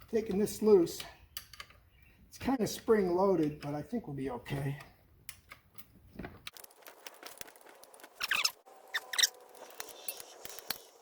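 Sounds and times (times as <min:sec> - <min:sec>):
sharp metal clicks and knocks: 0:00.0 - 0:01.9.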